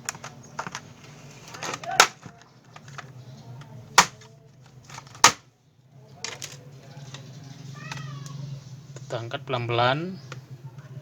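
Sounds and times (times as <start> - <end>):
plastic clips snapping loose: 0.0 - 5.4.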